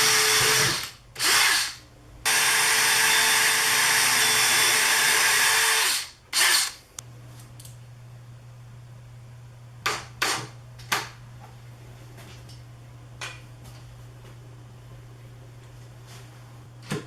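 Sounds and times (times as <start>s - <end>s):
steady low hum: 0.0s - 2.8s, 6.2s - 17.0s.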